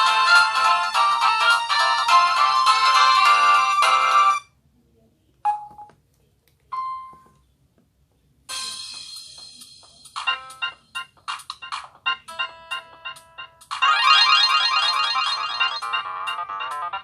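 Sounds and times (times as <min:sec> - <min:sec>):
electronic ringtone melody: 0:00.0 - 0:04.5, 0:10.2 - 0:17.0.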